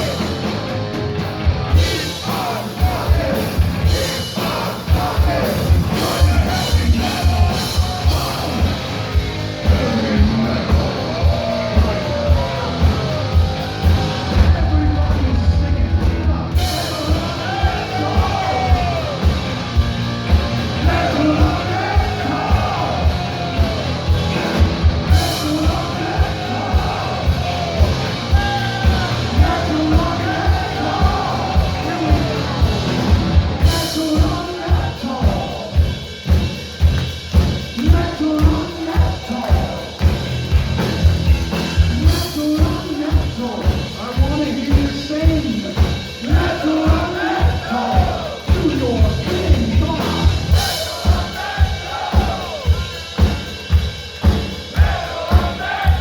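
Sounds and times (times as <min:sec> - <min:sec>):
heavy metal band playing: 0:00.0 - 0:56.0
person singing: 0:09.4 - 0:19.3, 0:20.8 - 0:32.6
kick drum beat: 0:49.8 - 0:56.0.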